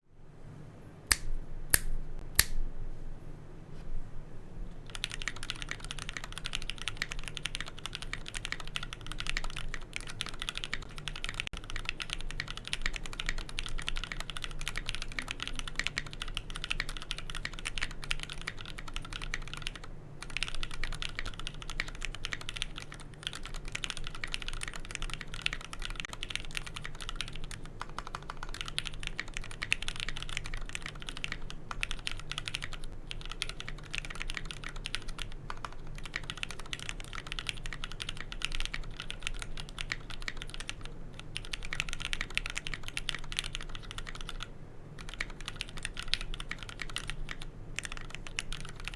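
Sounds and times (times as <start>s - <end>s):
mechanical keyboard typing: 4.9s - 48.9s.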